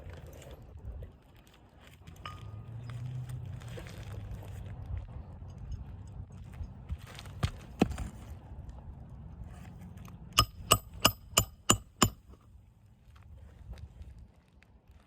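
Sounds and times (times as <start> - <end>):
wind rumble on microphone: 0.0 - 10.4, 12.6 - 15.0
hammer striking metal: 10.4 - 12.4.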